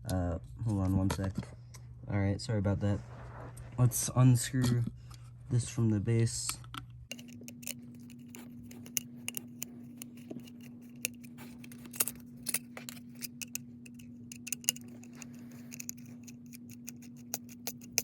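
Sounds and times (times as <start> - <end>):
low hum: 6.6 - 18.0
screwdriver clicks and scrapes: 7.1 - 18.0.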